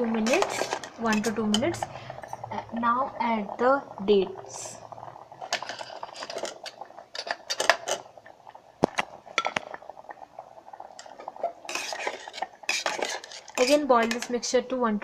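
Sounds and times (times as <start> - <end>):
spoon clinking on metal pot: 12.7 - 14.4.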